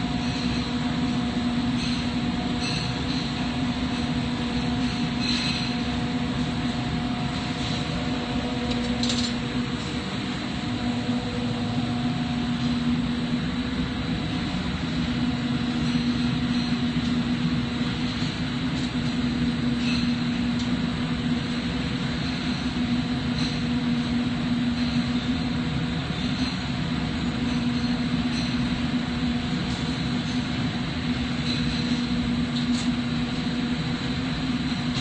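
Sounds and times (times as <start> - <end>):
low steady hum: 0.0 - 25.6.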